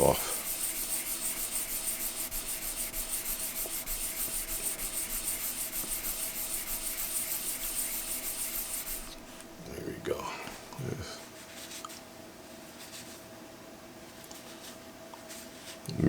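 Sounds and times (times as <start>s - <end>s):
sandpaper rubbing on metal: 0.0s - 9.4s.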